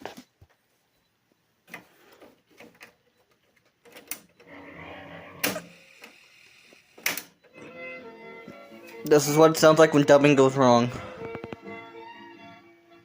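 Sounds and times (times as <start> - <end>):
tape deck clicks and clunks: 7.0 - 7.7.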